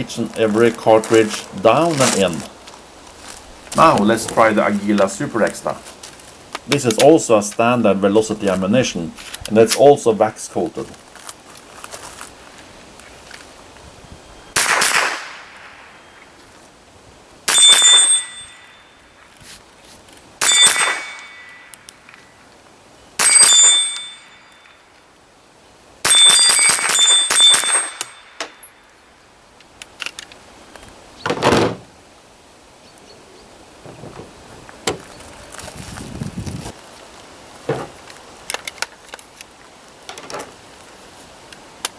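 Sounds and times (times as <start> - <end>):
rifle shots: 14.6 - 15.7, 20.4 - 21.6
steel target plate ringing: 17.5 - 19.1, 20.4 - 21.7, 23.2 - 24.9, 26.1 - 28.9.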